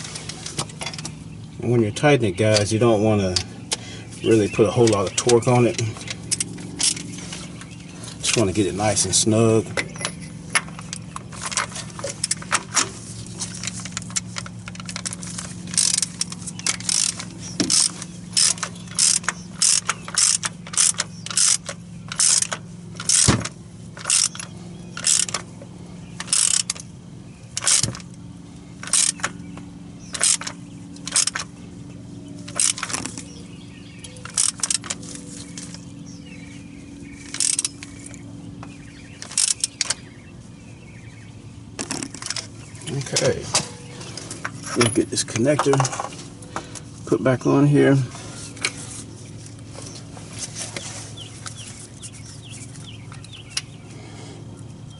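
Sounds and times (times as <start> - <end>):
ratchet wrench clicking: 4.8 - 7.1, 13.5 - 25.5, 26.2 - 26.9, 27.5 - 28.1, 28.8 - 29.4, 30.1 - 31.5, 32.5 - 33.3, 34.0 - 35.0, 37.2 - 38.2, 39.2 - 40.0.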